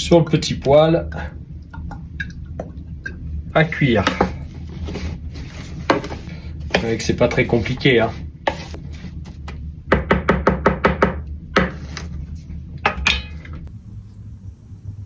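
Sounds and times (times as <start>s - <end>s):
cookware knocking on stove: 9.9s - 11.8s, 12.9s - 13.5s.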